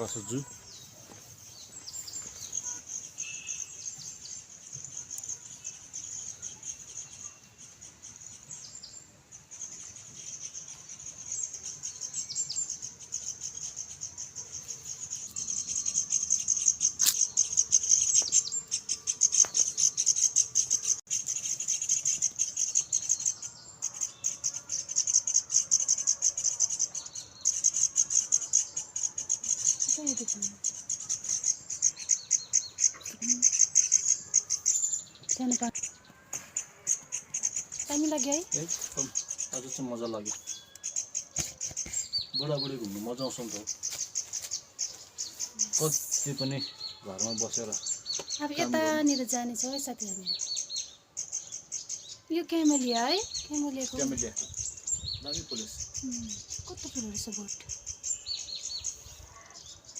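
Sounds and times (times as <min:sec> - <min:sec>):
insects chirring: 0:00.0 - 0:59.9
faint bird calls: 0:55.4 - 0:59.9.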